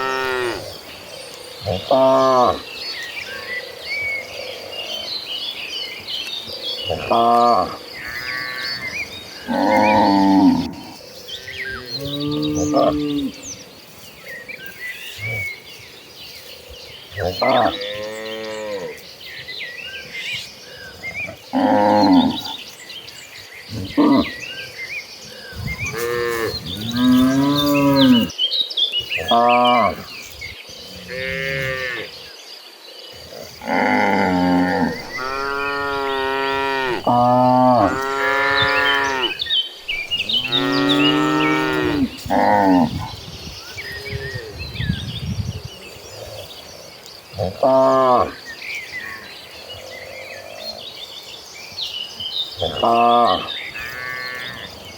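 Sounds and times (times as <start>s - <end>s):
cows mooing: 0.0s - 0.7s, 6.9s - 13.4s, 21.5s - 22.6s, 25.6s - 28.3s, 30.9s - 32.1s, 33.5s - 43.2s, 52.6s - 54.8s
small birds chirping: 0.0s - 54.9s
cattle mooing: 33.6s - 43.0s.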